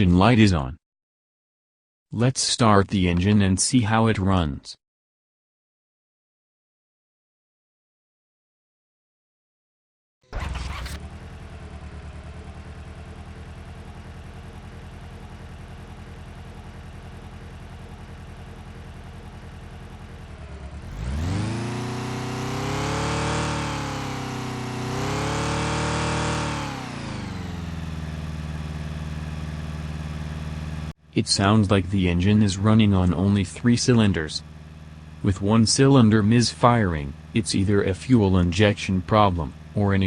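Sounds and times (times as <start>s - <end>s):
car engine idling unevenly and revving: 10.3s - 30.9s, 32.3s - 39.9s.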